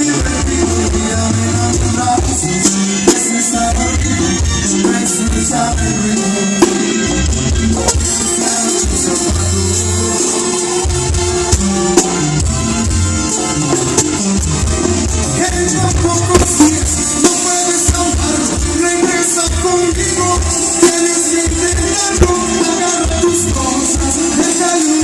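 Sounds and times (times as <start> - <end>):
bass line: 0.0 - 25.0
percussion: 0.0 - 25.0.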